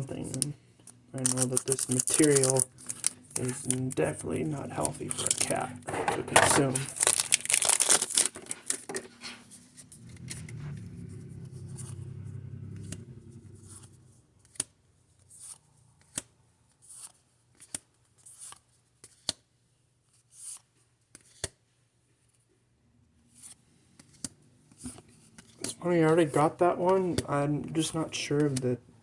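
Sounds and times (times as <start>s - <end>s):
cards being flipped: 1.2s - 4.0s, 20.3s - 21.6s
low rumble: 9.8s - 14.2s.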